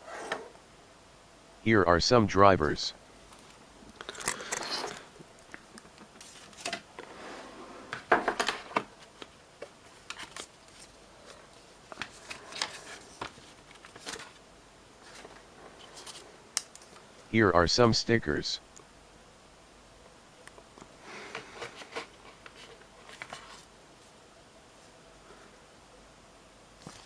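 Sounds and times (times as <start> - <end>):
paper and plastic rustling: 5.8 - 7.2, 8.5 - 14.4, 15.0 - 17.0, 21.3 - 24.1.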